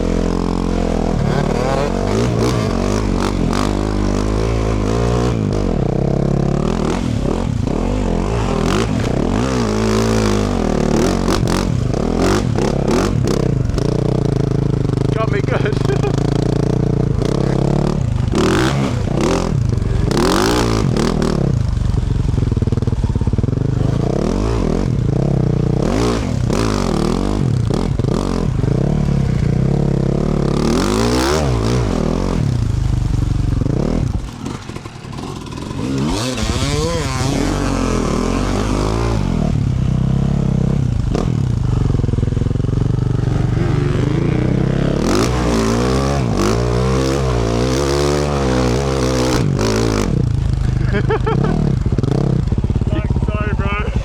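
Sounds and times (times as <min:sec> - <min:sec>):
motorcycle engine revving: 0:00.0 - 0:54.0
motorcycle clattering: 0:30.6 - 0:37.4.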